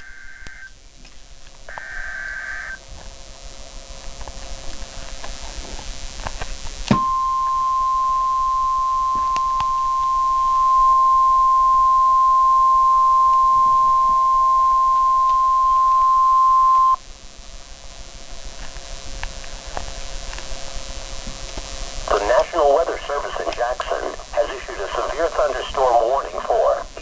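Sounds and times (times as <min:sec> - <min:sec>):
weather radio alarm tone: 0:06.9 - 0:17.0, 0:22.1 - 0:27.0.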